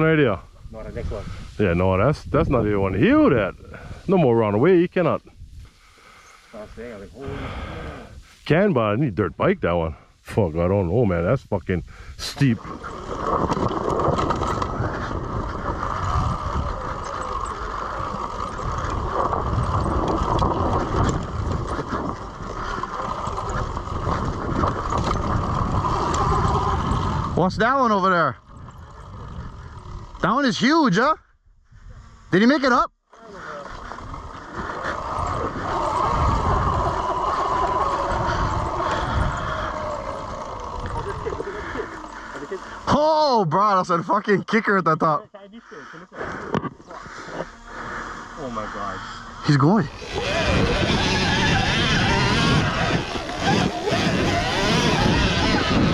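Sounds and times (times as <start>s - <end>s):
wind rumble on microphone: 0.0s - 30.4s, 31.4s - 32.4s, 33.7s - 43.0s, 46.3s - 55.9s
electric motor whine: 12.4s - 30.5s, 33.2s - 42.9s, 46.6s - 55.9s.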